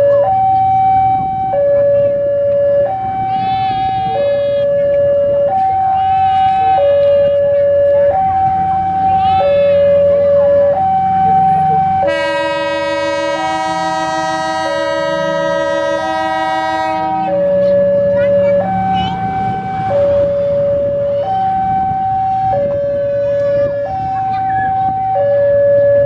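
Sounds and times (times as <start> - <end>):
two-tone crossing alarm: 0.0 - 26.0
locomotive horn blast: 3.0 - 4.9, 5.7 - 7.6, 11.8 - 17.6.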